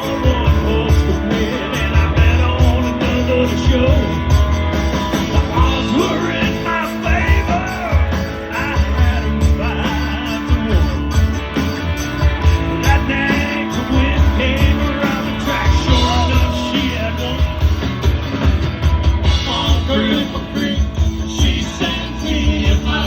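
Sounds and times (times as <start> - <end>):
person singing: 0.0 - 4.5, 5.2 - 11.4, 12.5 - 17.7, 19.3 - 23.0
bass: 0.0 - 23.0
guitar: 0.0 - 23.0
steady drum beat: 0.0 - 23.0.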